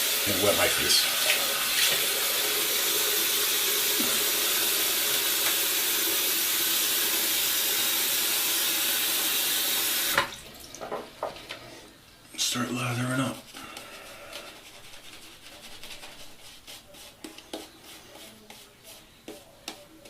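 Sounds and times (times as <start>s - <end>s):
tap water pouring into basin: 0.0s - 11.2s.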